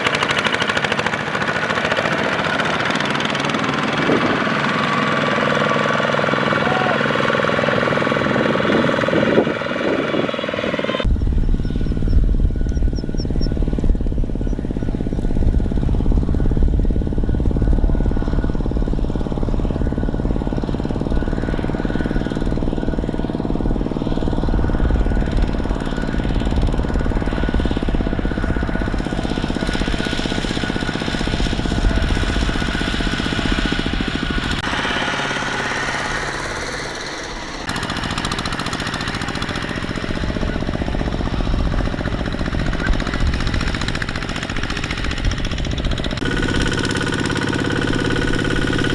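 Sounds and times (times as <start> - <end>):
tractor diesel engine knocking: 0.0 - 9.1, 11.0 - 48.9.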